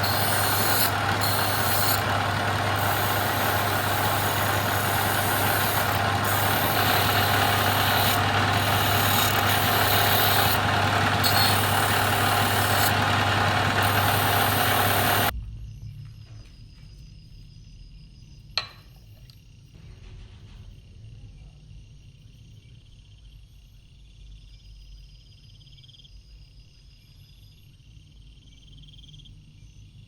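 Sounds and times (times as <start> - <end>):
power tool running: 0.0 - 15.3.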